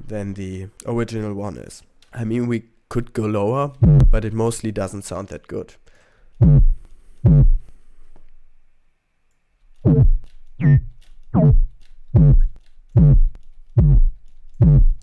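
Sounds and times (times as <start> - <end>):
deep synth bass: 3.8 - 4.2, 6.4 - 7.6, 9.8 - 15.0.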